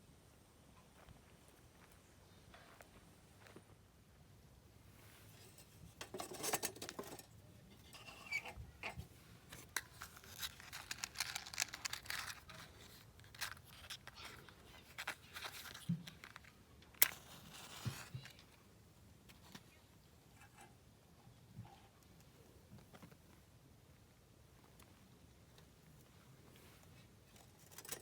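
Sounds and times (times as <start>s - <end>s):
bags rustling and crinkling: 9.6s - 16.6s.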